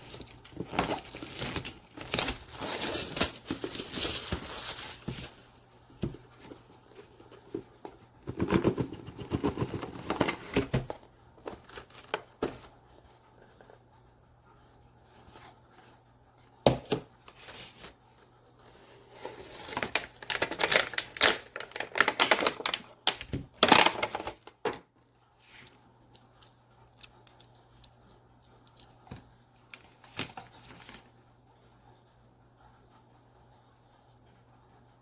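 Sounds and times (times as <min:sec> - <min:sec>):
rustling: 0:00.0 - 0:13.6.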